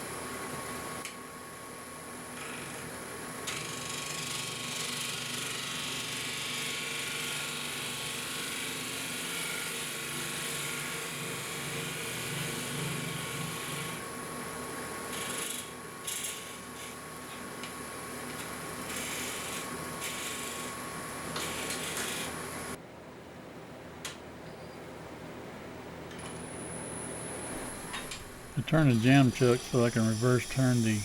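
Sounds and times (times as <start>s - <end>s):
wood lathe motor hum: 3.5s - 14.0s, 28.0s - 31.0s
gouge scraping spinning wood: 28.6s - 31.0s.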